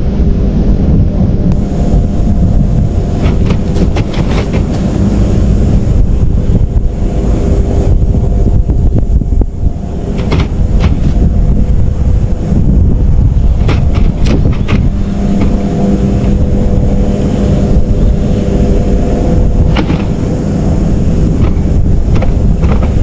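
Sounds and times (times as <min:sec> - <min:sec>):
vehicle engine rumble: 0:00.0 - 0:23.0
sharp clicks or rattles: 0:10.2 - 0:11.2, 0:13.6 - 0:15.6, 0:19.7 - 0:20.2, 0:21.4 - 0:23.0.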